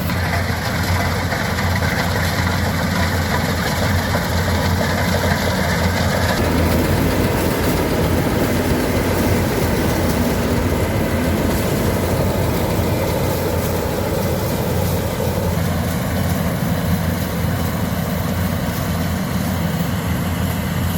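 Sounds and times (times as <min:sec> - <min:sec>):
combine harvester engine hum: 0:00.0 - 0:20.9.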